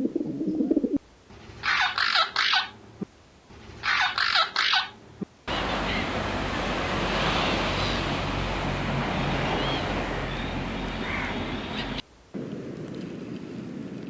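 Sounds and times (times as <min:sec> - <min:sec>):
bird call: 0:01.4 - 0:02.8, 0:03.7 - 0:12.0
outdoor rushing noise: 0:05.5 - 0:12.5.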